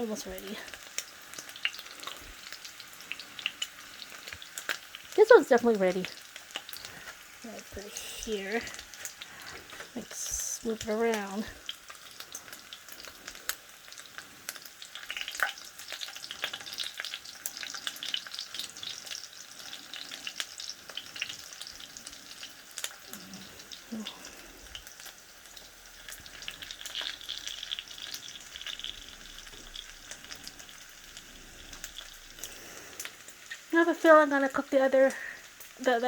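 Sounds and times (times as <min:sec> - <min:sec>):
sausage sizzling in a frying pan: 0:00.0 - 0:36.0
sharp crackles and pops: 0:00.0 - 0:36.0.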